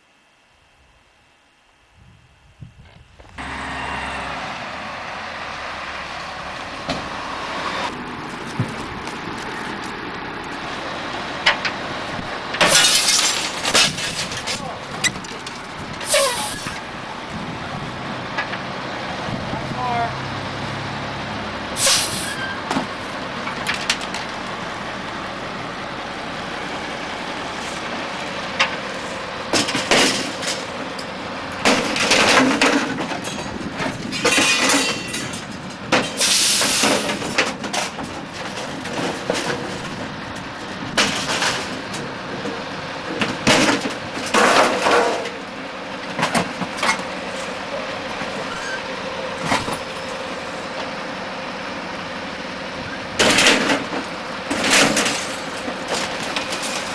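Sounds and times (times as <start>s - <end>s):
garbage truck engine running: 3.3s - 56.9s
compactor crushing trash: 11.4s - 16.9s, 27.6s - 48.5s, 52.8s - 56.9s
glass breaking: 12.6s - 14.7s.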